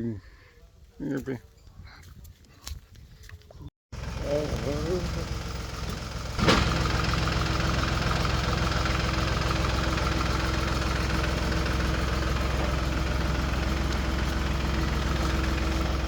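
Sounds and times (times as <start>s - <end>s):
engine idling: 3.9s - 16.0s.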